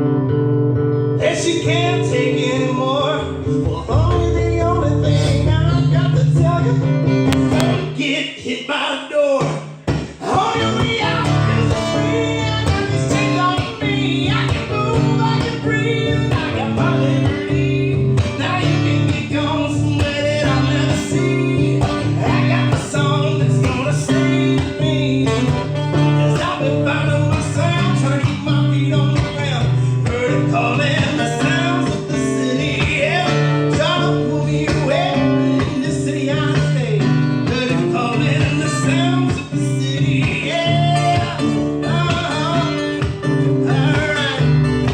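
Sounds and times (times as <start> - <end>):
bass line: 0.0 - 8.0, 10.2 - 44.9
strummed guitar: 0.0 - 44.9.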